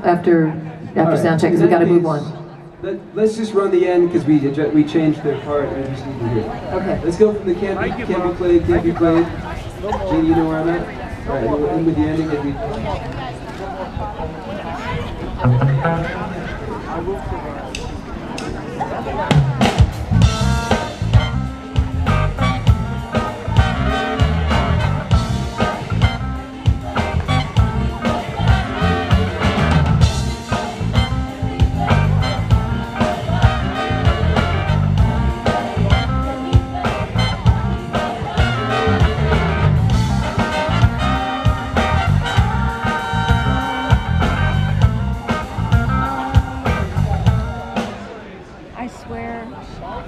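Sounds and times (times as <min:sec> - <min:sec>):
live band with horns: 0:14.7 - 0:17.2, 0:18.3 - 0:50.0
bass line: 0:15.4 - 0:16.4, 0:19.3 - 0:48.1
drum kit: 0:19.3 - 0:48.1.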